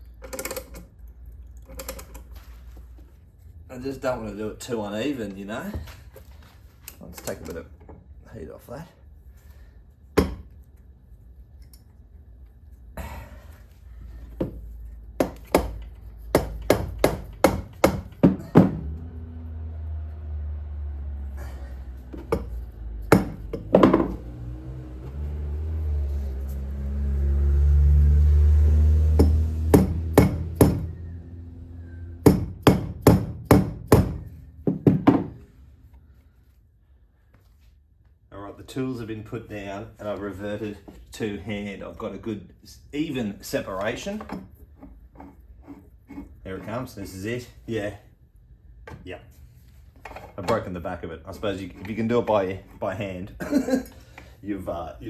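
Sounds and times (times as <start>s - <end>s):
hammer tapping on metal: 15.2s - 18.9s, 22.2s - 24.2s, 29.2s - 31.0s, 32.2s - 35.4s.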